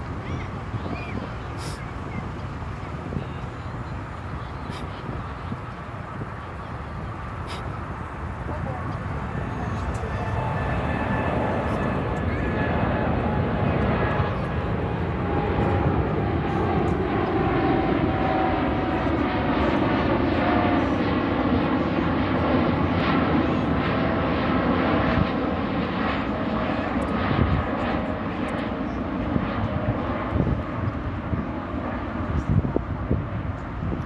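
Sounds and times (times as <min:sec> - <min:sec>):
jet engines rumbling: 0:00.0 - 0:34.0
faint falling whine: 0:07.4 - 0:15.8.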